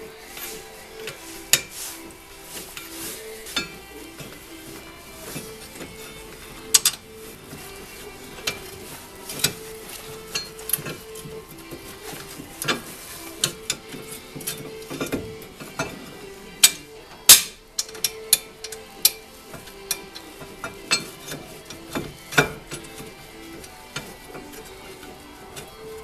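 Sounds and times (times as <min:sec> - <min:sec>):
metal clicks and knocks of tools: 0:12.1 - 0:24.7.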